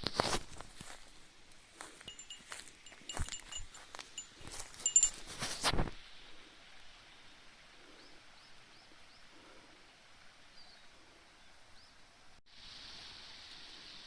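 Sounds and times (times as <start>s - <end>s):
steady hiss: 12.3s - 14.0s.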